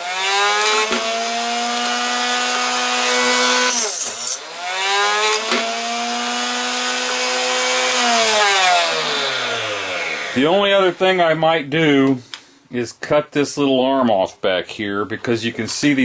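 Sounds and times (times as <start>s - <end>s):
chop saw motor whining: 0.0s - 10.5s.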